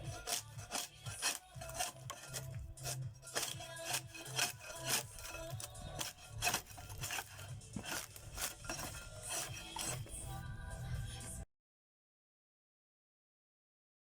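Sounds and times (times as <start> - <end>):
hand tool rasping and scraping: 0.0 - 10.4
background music: 0.0 - 11.4.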